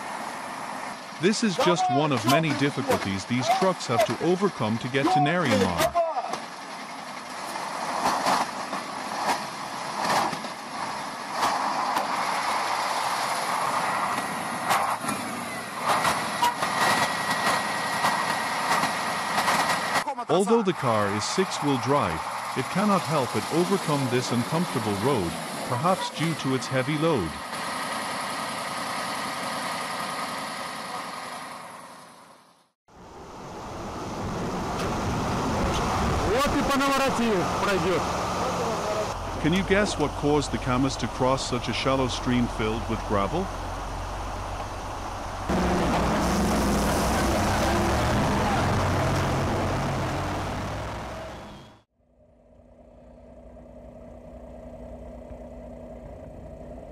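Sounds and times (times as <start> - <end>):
heavy truck engine under load: 0.0 - 32.6, 33.5 - 51.8
rushing outdoor noise: 32.9 - 51.8
low rumble: 45.3 - 51.7.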